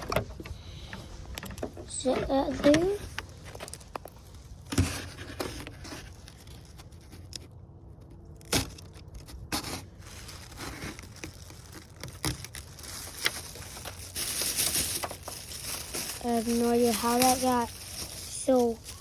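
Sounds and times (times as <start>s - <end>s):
rubbing and rustling: 9.5s - 19.0s.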